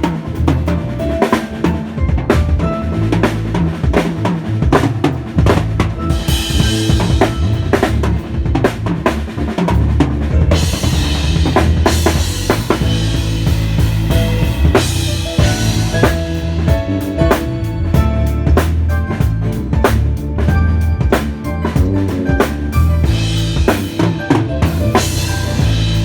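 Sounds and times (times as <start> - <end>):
drum kit playing: 0.0 - 26.0.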